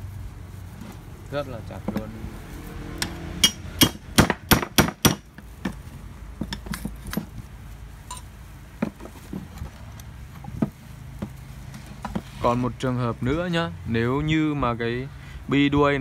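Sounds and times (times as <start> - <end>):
hammer striking metal: 3.0 - 5.3
metal taps and clinks: 6.4 - 7.3, 8.1 - 8.3.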